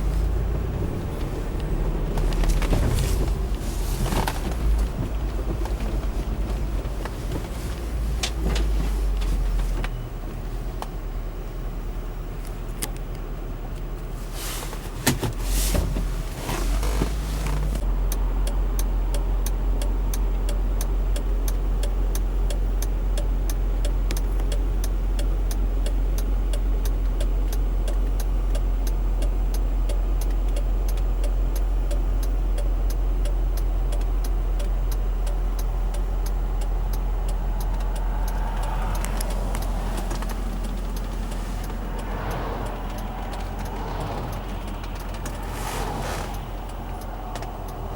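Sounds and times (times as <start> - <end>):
vehicle engine rumble: 0.0 - 47.9
fast even ticking: 31.2 - 45.5.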